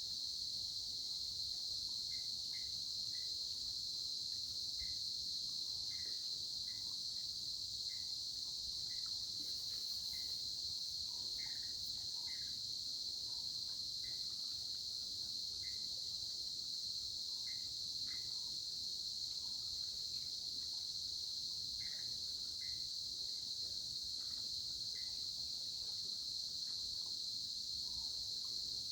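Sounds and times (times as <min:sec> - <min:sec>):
insect chorus trilling: 0:00.4 - 0:28.9
short insect chirps: 0:08.8 - 0:14.8.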